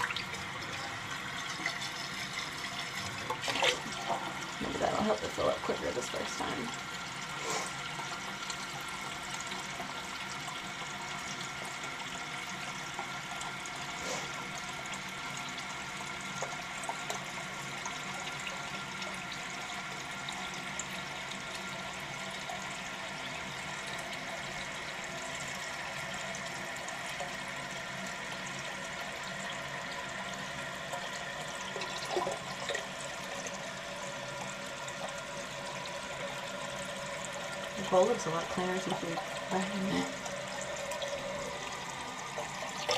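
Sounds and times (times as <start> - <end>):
toilet tank refilling hiss: 0.0 - 42.9.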